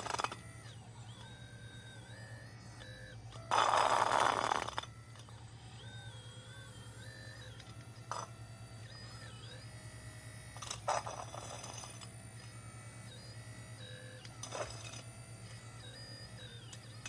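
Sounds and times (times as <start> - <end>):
hydraulic pump humming: 0.0 - 9.7
motor whine: 0.0 - 17.0.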